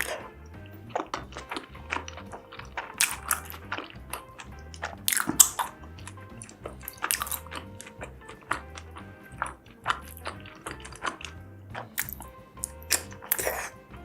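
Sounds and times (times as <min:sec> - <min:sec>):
background music with low bass: 0:00.0 - 0:14.0
person chewing and crunching food: 0:00.0 - 0:14.0.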